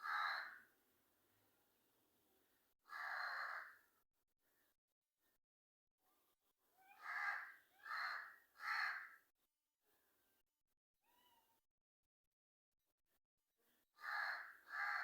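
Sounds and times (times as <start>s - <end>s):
crow cawing: 0.0s - 0.6s, 2.9s - 3.8s, 7.0s - 9.2s, 14.0s - 15.0s.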